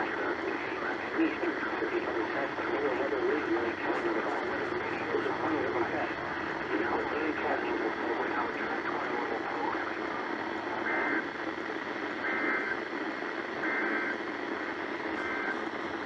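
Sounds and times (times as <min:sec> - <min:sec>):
radio static hiss: 0:00.0 - 0:16.0
buzzy two-tone data bursts: 0:03.6 - 0:15.7.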